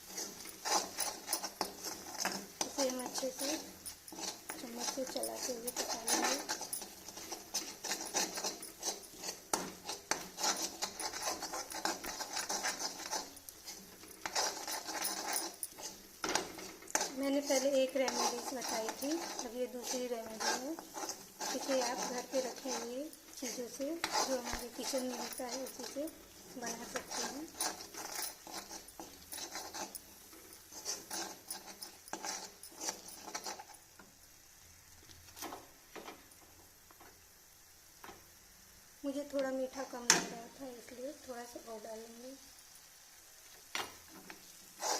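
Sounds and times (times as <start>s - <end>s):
spoon scraping paste in a pan: 0.0s - 34.1s, 44.0s - 44.9s.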